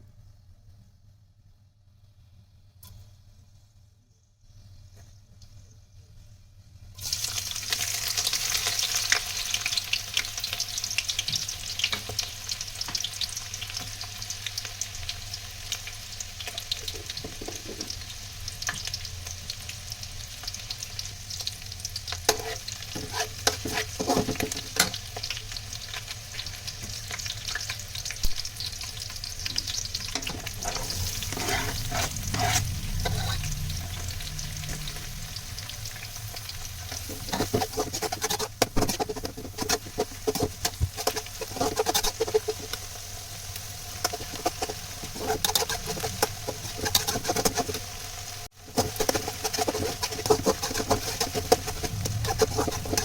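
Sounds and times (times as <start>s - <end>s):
food sizzling in a pan: 7.0s - 53.0s
spatula strokes in a pan: 22.3s - 25.4s, 29.5s - 53.0s.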